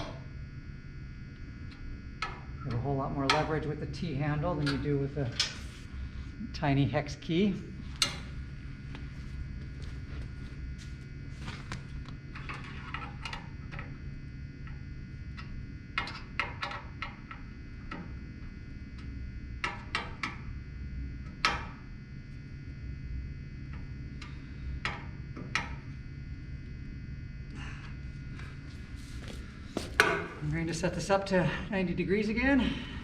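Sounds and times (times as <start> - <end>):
steady low hum: 0.0 - 33.0.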